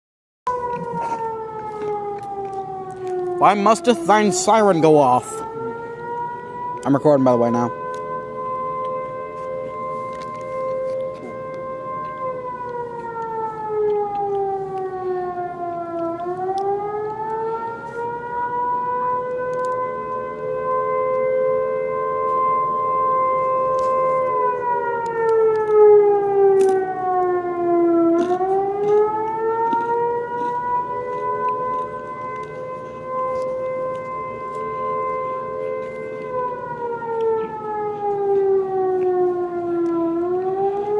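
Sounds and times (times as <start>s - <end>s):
outdoor warning siren wailing: 0.4s - 40.9s.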